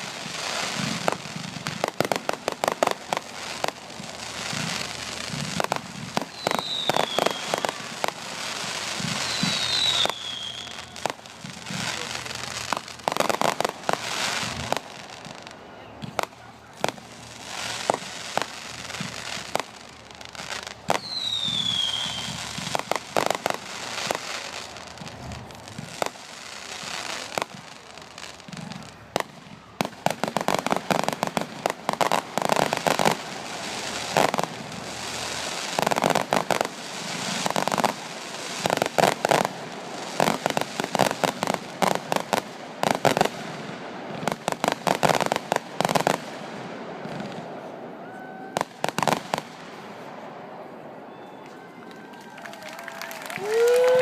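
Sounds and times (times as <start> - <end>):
firework crackling bursts: 0.0 - 51.0, 52.1 - 54.0
firework falling whistle: 5.6 - 8.2, 9.0 - 11.2, 20.9 - 24.2.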